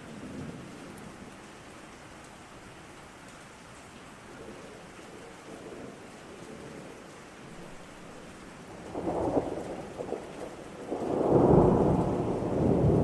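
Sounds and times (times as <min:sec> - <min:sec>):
steady rain: 0:00.0 - 0:13.0
thunder rumbling: 0:08.7 - 0:13.0.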